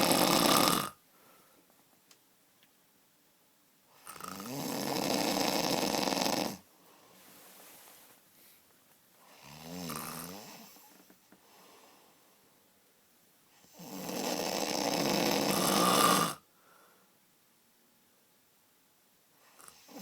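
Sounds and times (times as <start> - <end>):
man snoring: 0.0 - 1.0, 4.0 - 6.6, 9.3 - 10.8, 13.7 - 16.4.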